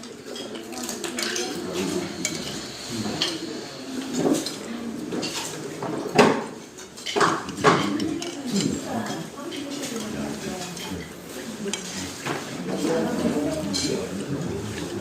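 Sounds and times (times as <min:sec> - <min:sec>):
cutlery clinking on plates: 0:00.0 - 0:15.0.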